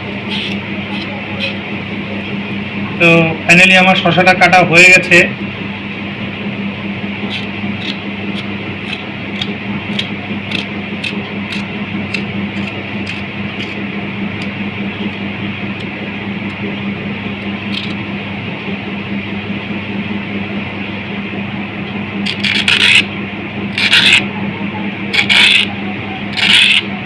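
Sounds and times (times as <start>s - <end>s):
steady low hum: 0.0s - 27.0s
harsh scrapes on cucumber: 22.3s - 23.1s, 26.3s - 26.9s.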